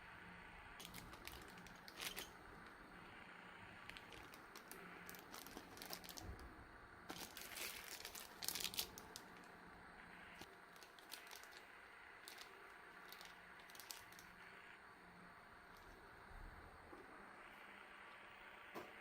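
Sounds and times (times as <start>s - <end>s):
packaging crinkling and rustling: 0.8s - 2.3s, 3.8s - 6.5s, 7.1s - 9.5s, 10.4s - 11.6s, 12.2s - 14.4s.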